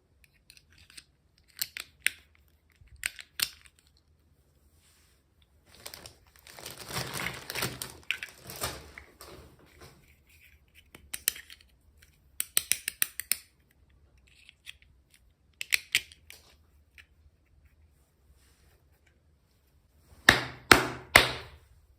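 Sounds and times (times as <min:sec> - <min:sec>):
packaging rustling and crinkling: 0:05.6 - 0:10.4.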